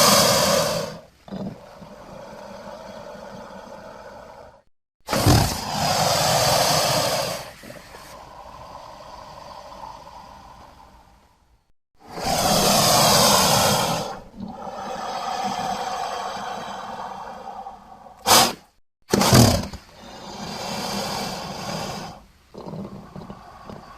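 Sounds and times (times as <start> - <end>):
monster roaring: 2.2 - 7.6, 12.0 - 18.5.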